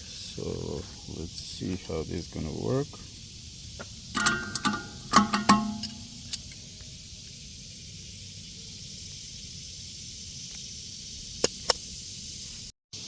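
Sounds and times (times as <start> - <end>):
steady hiss: 0.0 - 13.0
metal clank: 4.1 - 6.5
tool clicks: 4.2 - 6.6.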